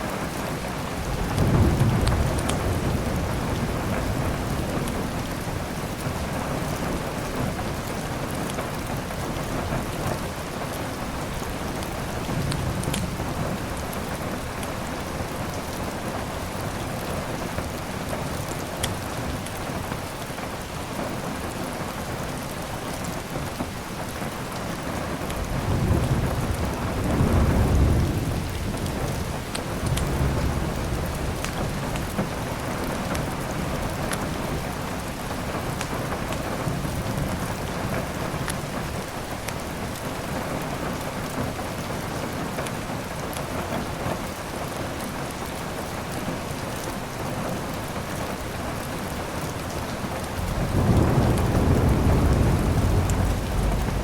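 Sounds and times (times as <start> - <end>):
heavy rain: 0.0 - 54.0
rolling thunder: 0.9 - 5.8, 25.4 - 33.0, 50.2 - 54.0.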